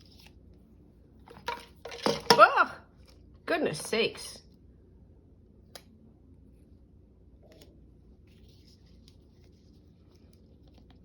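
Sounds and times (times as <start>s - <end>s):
paper handling sounds: 7.5s - 11.0s.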